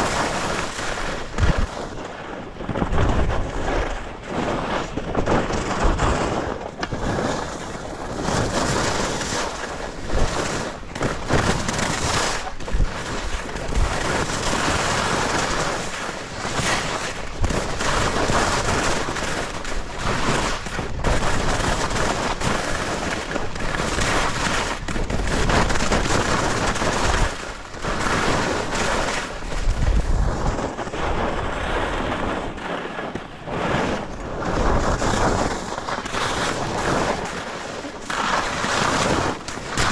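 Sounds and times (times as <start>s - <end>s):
skis scraping over snow: 0.0s - 39.9s
wind buffeting microphone: 0.0s - 39.9s.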